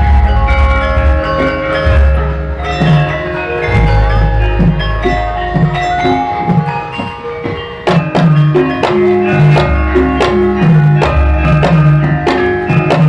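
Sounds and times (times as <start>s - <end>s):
deep gong strokes: 0.0s - 7.0s
metallophones ringing: 0.0s - 13.0s.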